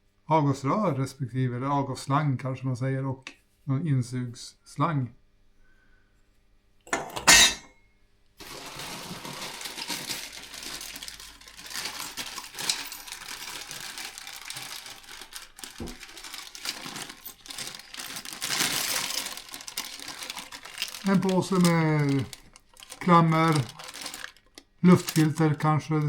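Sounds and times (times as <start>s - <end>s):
plastic packaging crinkling: 8.4s - 26.0s
clatter of parts: 8.5s - 25.4s.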